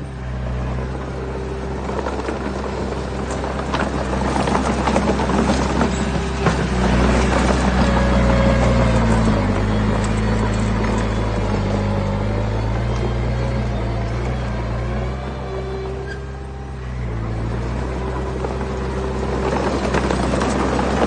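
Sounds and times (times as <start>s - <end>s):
heavy diesel engine running: 0.0s - 21.0s
rocks clattering: 1.8s - 11.8s, 17.8s - 21.0s.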